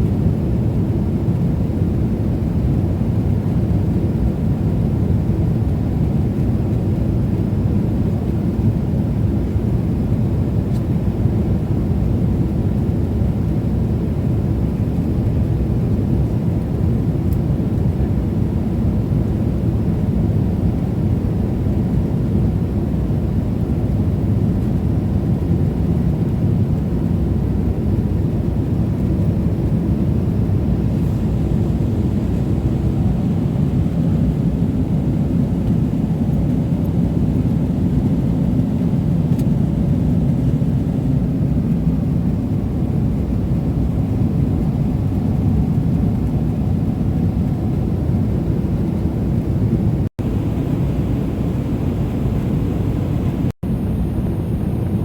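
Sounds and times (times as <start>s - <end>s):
airplane cabin rumble: 0.0s - 55.0s.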